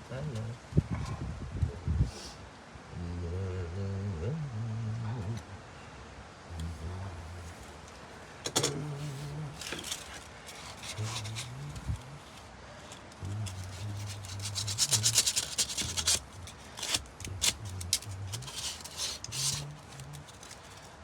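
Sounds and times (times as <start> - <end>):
hand sanding strokes: 9.0 - 12.4, 13.2 - 20.8.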